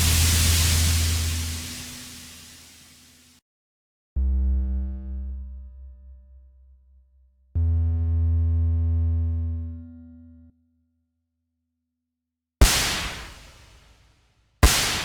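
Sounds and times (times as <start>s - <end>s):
synthesizer notes with heavy bass: 0.0s - 2.9s.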